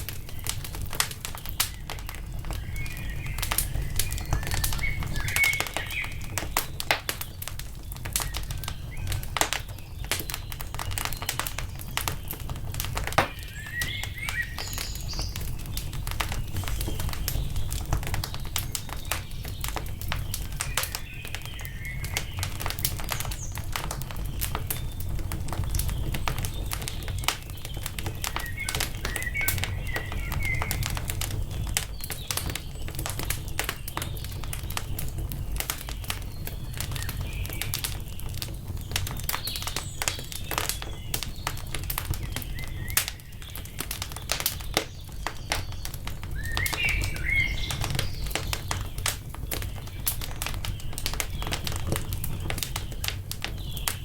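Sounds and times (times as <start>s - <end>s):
birds chirping: 0.0s - 54.0s
wood fire crackling and popping: 0.0s - 54.0s.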